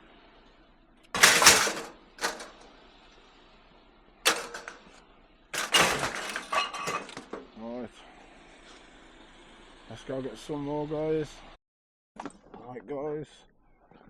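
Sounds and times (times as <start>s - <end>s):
scrap metal clanging: 1.2s - 2.6s, 4.3s - 5.0s, 5.6s - 7.6s.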